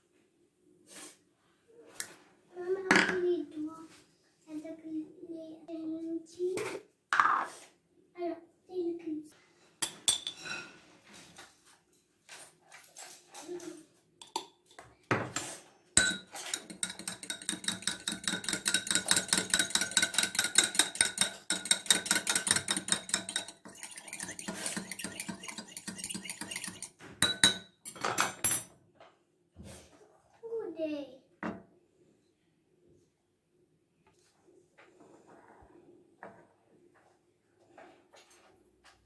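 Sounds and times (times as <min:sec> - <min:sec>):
spoon clinking glass: 0:09.8 - 0:10.5, 0:16.0 - 0:28.7
metal spoon stirring in glass: 0:16.0 - 0:28.0.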